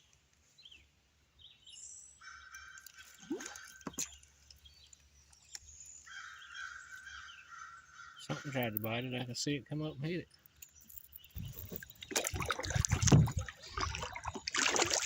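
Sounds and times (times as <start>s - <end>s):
small splash on water: 2.8s - 4.3s, 11.5s - 15.0s.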